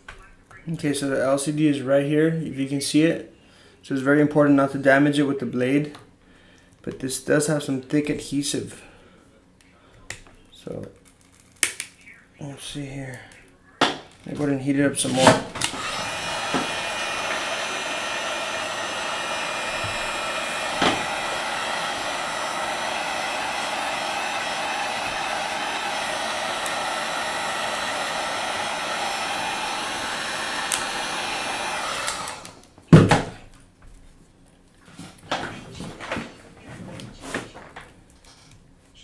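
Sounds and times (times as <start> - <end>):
hot-air blower running: 14.7 - 33.3.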